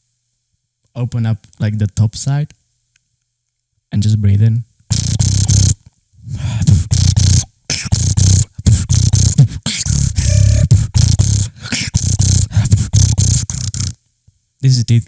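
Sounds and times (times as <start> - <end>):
buzzing lip roll: 4.9 - 14.0.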